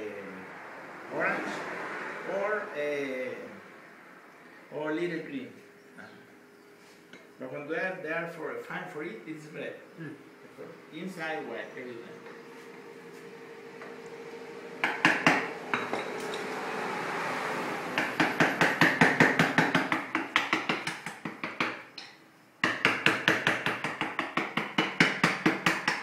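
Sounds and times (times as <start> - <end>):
rapid sharp knocks: 14.8 - 15.8, 18.0 - 21.9, 22.6 - 26.0.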